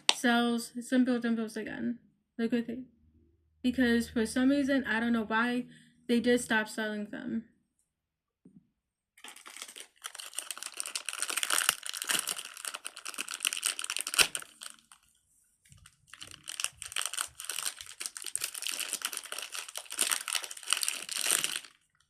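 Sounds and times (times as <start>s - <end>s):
crinkling handling noise: 9.2s - 22.0s.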